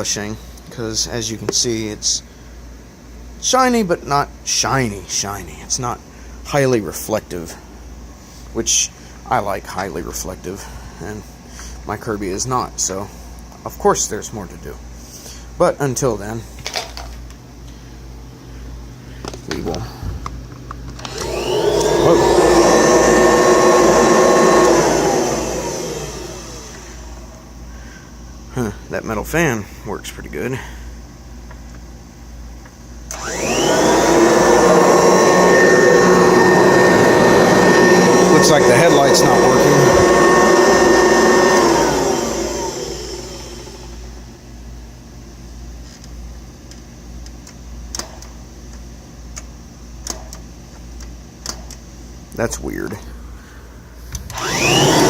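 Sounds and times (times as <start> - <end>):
vacuum motor whine: 20.9 - 27.6, 33.1 - 44.4, 54.1 - 55.0
low hum: 33.1 - 44.2.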